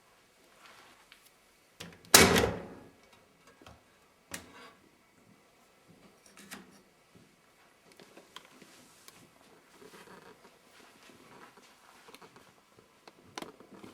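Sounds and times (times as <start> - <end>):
washing machine door clunk: 2.1 - 2.8.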